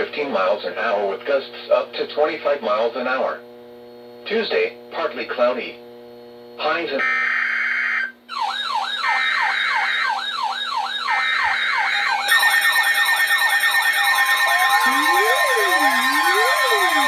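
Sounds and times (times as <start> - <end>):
fast yelping siren: 7.1 - 17.0
deep wailing sirens: 8.3 - 17.0
screeching data tones: 11.1 - 17.0
steady alert tones: 12.3 - 17.0.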